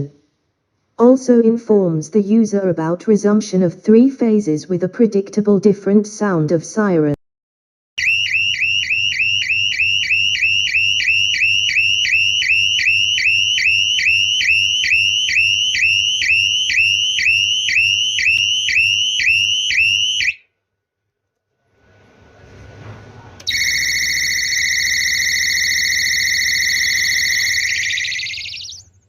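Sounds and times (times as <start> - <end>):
electronic alarm siren sweeps: 8.0 - 20.4, 23.5 - 29.0.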